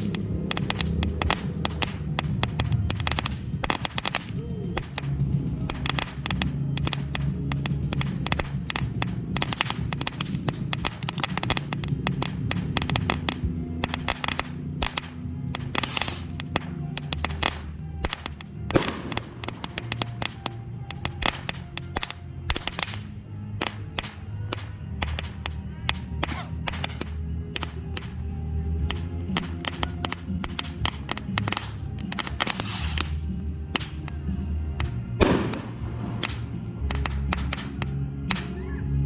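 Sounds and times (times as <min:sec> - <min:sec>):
firework bang: 0:00.0 - 0:28.1, 0:28.8 - 0:34.1, 0:34.8 - 0:38.5
fireworks crackling and popping: 0:00.0 - 0:39.0.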